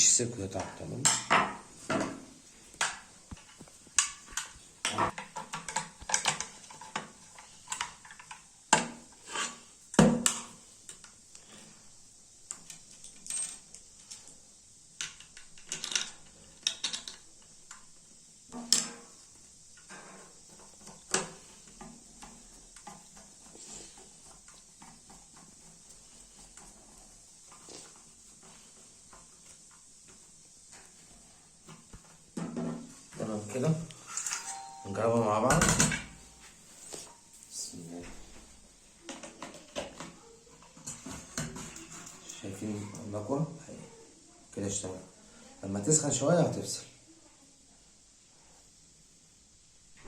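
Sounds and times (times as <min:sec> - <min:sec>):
plastic and metal parts clinking: 0:15.0 - 0:17.3.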